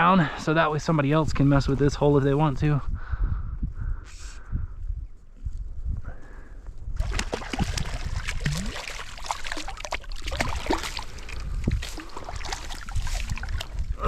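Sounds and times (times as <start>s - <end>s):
creek water splashing and gurgling: 7.0s - 14.0s.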